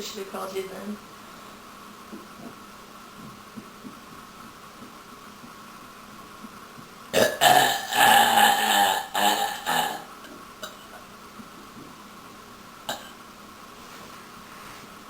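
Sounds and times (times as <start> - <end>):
woman belching: 7.2 - 10.8, 12.9 - 13.2.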